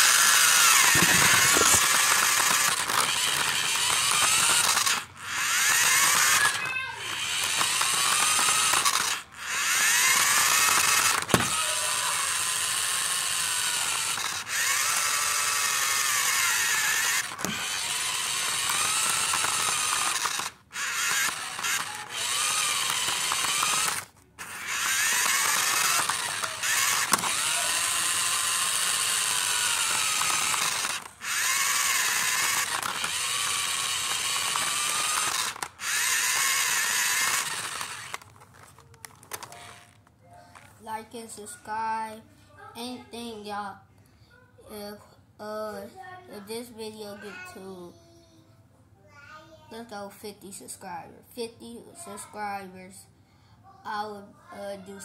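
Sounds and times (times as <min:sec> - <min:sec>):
toy car motor whining: 0:00.0 - 0:42.1.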